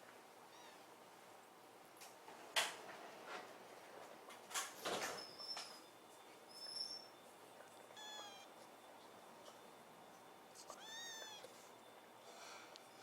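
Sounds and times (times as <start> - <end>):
kitten mewing: 7.9 - 8.5, 10.6 - 11.6.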